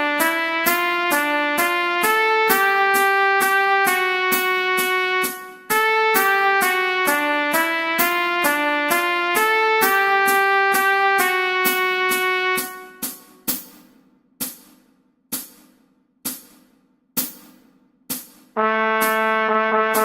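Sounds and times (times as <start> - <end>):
melody of held notes: 18.6 - 20.0.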